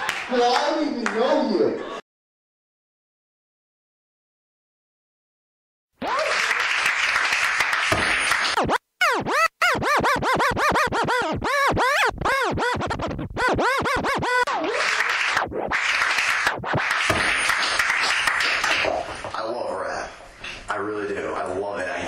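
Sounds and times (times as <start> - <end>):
turntable scratching: 7.7 - 19.4.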